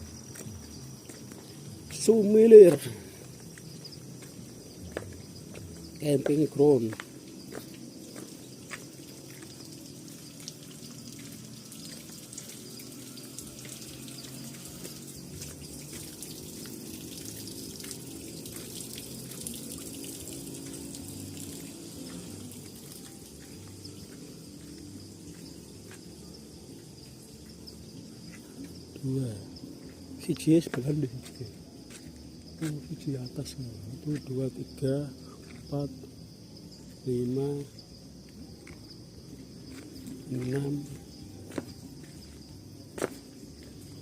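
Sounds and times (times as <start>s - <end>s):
high insect trill: 0.0s - 44.0s
running water: 4.2s - 27.9s.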